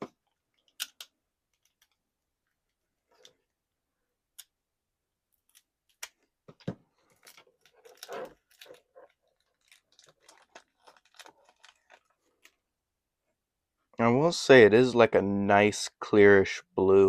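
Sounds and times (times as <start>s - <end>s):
plastic parts clicking and crinkling: 0.0s - 3.6s, 5.3s - 12.7s.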